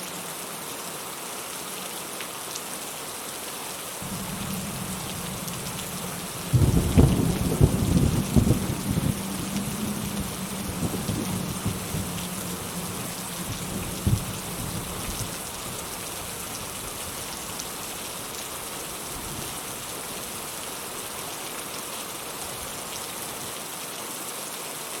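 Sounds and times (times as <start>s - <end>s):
heavy rain falling: 0.0s - 25.0s
thunder rumbling: 4.0s - 19.4s.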